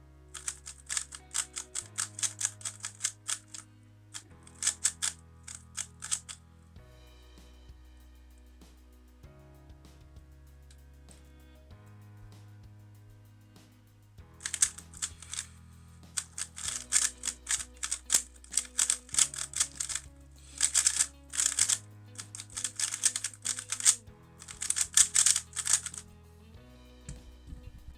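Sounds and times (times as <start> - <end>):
background music with low chords: 0.0 - 27.9
puzzle cube clacking: 0.4 - 3.6, 4.2 - 6.4, 14.4 - 15.5, 16.1 - 26.0.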